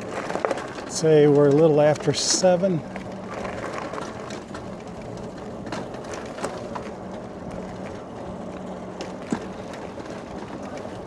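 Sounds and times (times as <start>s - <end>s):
faint motor hum: 0.0s - 11.0s
road and wind noise: 0.0s - 11.0s.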